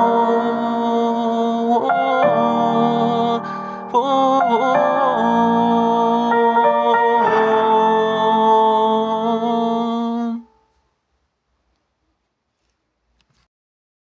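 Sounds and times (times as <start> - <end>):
held music chord: 0.0 - 10.4.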